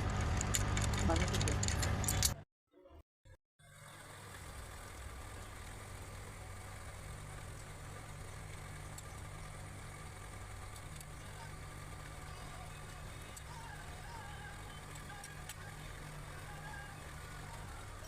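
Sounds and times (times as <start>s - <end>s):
car engine idling: 3.6s - 18.0s.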